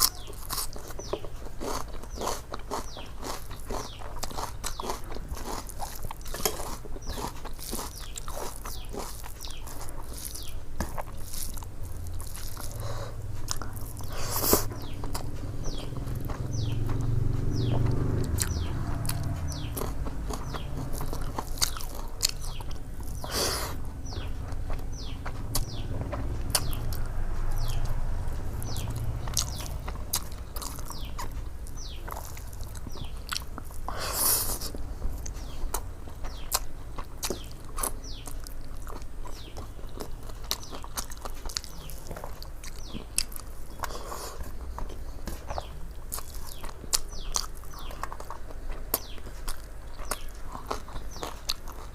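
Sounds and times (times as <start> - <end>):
loud crunches: 0.0 - 17.1
person chewing: 0.0 - 51.9.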